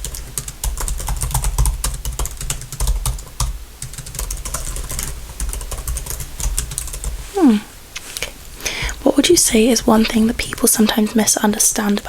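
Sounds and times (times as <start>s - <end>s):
typing on computer keyboard: 0.0s - 7.1s.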